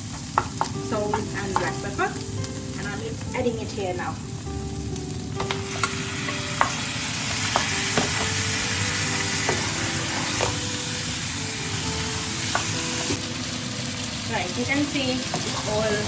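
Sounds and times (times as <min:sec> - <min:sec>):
chicken sizzling in a pan: 0:00.0 - 0:16.0
spoon knocking against pan: 0:00.2 - 0:01.8, 0:05.4 - 0:08.4, 0:12.5 - 0:12.8.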